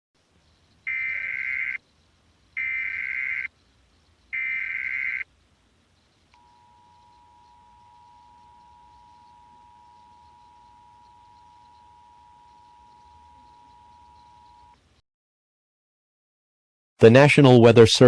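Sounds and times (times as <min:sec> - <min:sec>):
shrill digital data tones: 0:00.9 - 0:01.8, 0:02.6 - 0:03.5, 0:04.4 - 0:05.3, 0:06.4 - 0:14.8
two-tone attention signal: 0:06.4 - 0:14.8.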